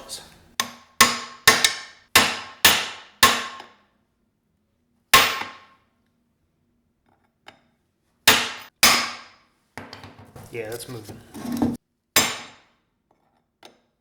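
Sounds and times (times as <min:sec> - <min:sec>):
hammer clanging on metal punch: 0:05.2 - 0:05.6, 0:08.3 - 0:09.2.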